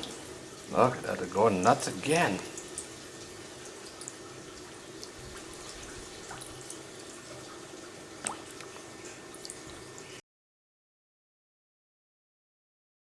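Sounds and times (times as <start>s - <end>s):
water trickling and dripping: 0.0s - 10.2s
small water splashes: 5.0s - 7.6s, 8.2s - 8.7s.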